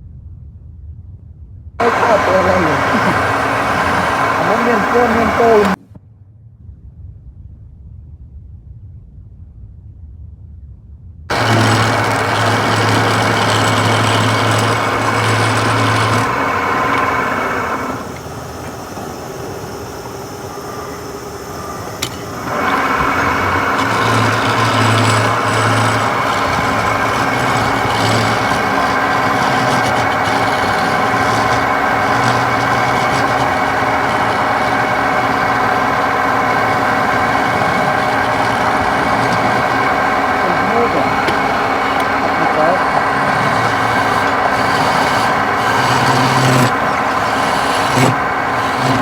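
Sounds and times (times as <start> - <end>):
turning tool scraping wood: 1.8 - 5.8, 11.3 - 49.0
wood lathe humming: 1.8 - 5.8, 11.3 - 49.0
click: 20.5 - 30.4.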